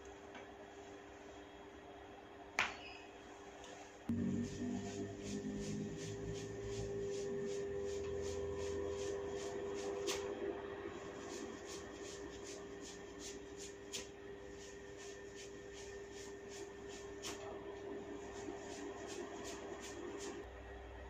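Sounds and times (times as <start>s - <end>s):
low hum: 4.1s - 9.5s.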